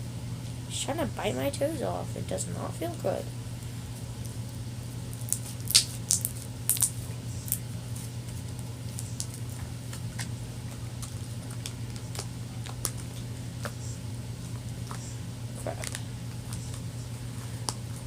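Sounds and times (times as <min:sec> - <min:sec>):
slime squishing: 0:04.2 - 0:13.8.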